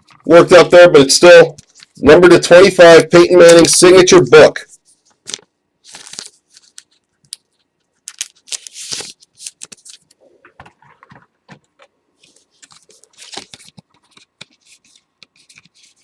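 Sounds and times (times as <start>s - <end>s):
cards and plastic wrappers rustling: 1.4s - 2.0s, 4.6s - 16.0s.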